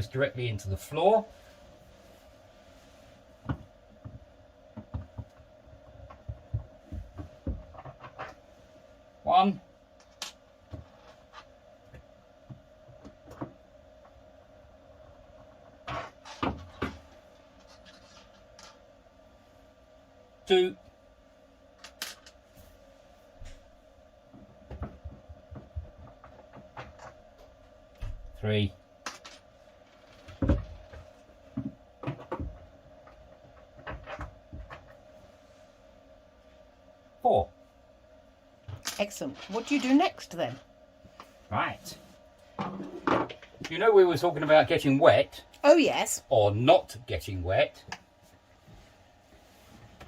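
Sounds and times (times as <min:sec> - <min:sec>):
steady hum: 0:00.0 - 0:50.0
dull knocks and bumps: 0:03.4 - 0:08.3, 0:24.3 - 0:27.1, 0:30.2 - 0:34.9.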